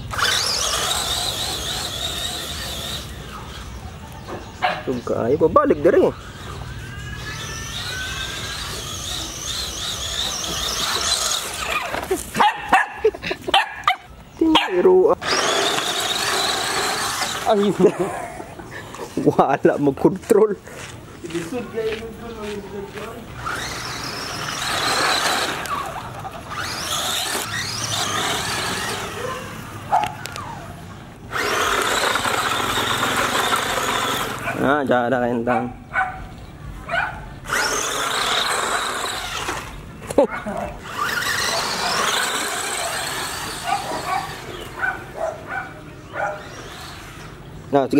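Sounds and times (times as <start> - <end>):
rc car motor whining: 0.0 - 12.4, 14.7 - 19.4, 23.0 - 35.0, 37.4 - 47.9
dog barking: 12.4 - 14.8, 29.2 - 30.2, 35.5 - 36.3, 36.9 - 37.2, 43.6 - 46.5.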